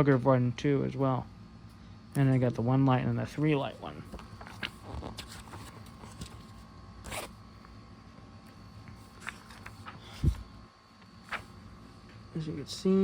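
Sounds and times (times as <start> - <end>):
paper pages rustling: 4.1 - 7.3, 9.0 - 10.5, 11.2 - 11.6.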